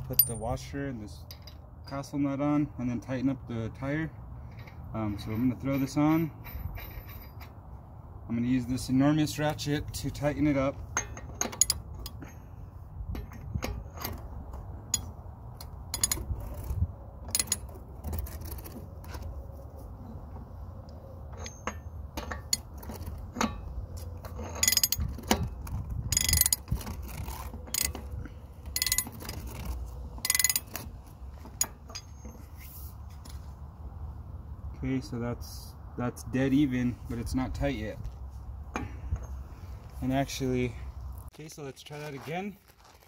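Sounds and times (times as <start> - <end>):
metal clinks and taps: 0.0 - 0.5, 10.9 - 12.3, 21.3 - 25.4, 28.7 - 29.4, 30.2 - 30.8
ratchet clicking: 26.1 - 28.1, 28.7 - 30.9.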